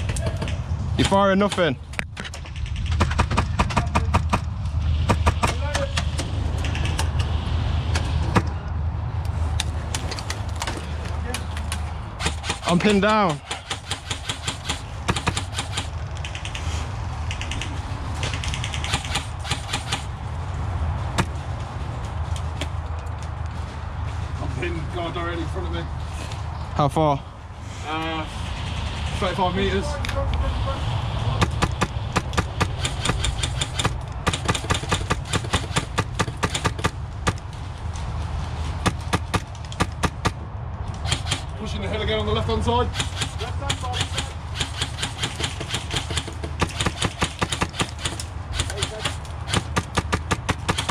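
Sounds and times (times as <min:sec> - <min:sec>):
airsoft gunfire: 0:13.5 - 0:16.6, 0:17.3 - 0:20.1, 0:31.4 - 0:37.0, 0:42.9 - 0:50.9.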